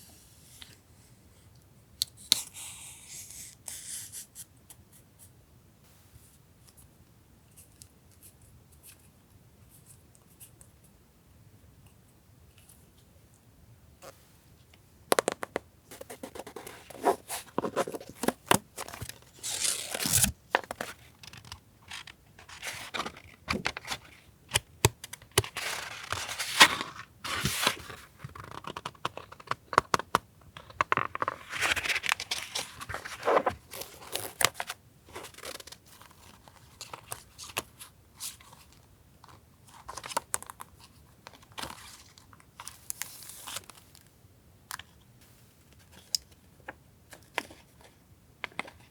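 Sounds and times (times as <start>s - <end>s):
paper packaging rustling: 16.0s - 29.8s, 30.9s - 37.2s.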